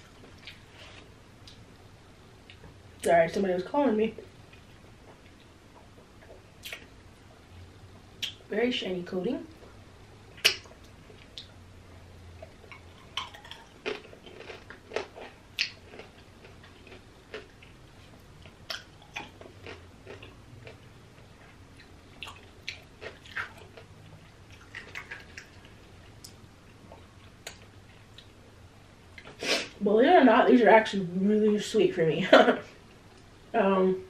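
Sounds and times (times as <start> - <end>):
crunchy candy chewing: 12.7 - 17.7, 18.4 - 20.8.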